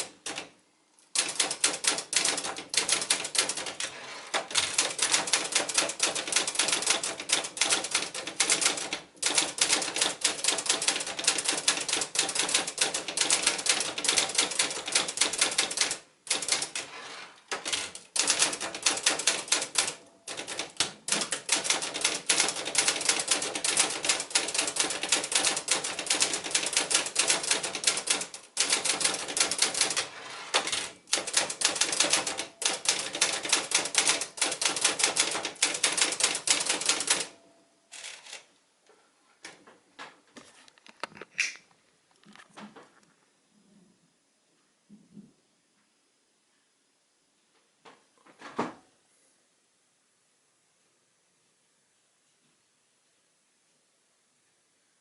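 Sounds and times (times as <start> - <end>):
typewriter keys striking: 0.0 - 0.5, 1.1 - 16.9, 17.5 - 37.3.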